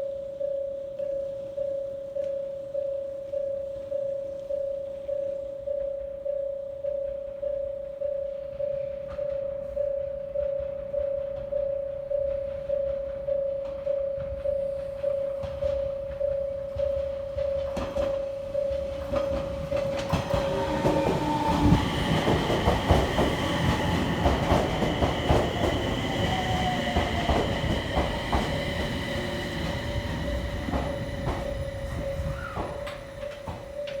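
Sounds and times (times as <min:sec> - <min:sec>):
pulsing crossing warning tone: 0:00.0 - 0:34.0
train wheels clacking: 0:14.4 - 0:34.0
high wheel squeal: 0:25.4 - 0:34.0.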